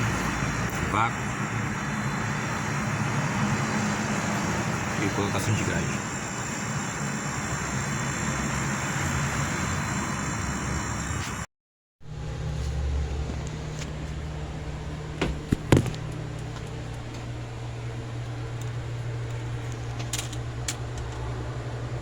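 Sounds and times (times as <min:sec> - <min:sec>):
refrigerator compressor humming: 0:00.0 - 0:11.2, 0:12.0 - 0:22.0
steady hiss: 0:00.0 - 0:11.4
sharp knocks: 0:15.2 - 0:16.1.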